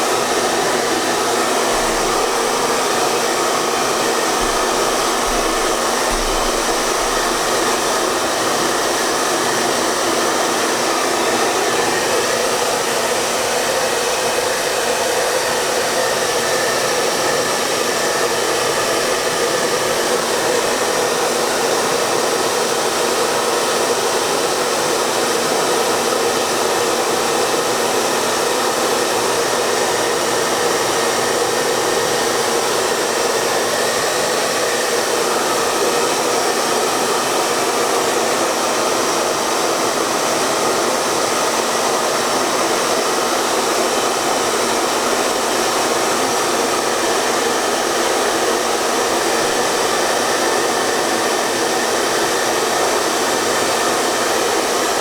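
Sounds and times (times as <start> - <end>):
hair dryer running: 0.0 - 55.0.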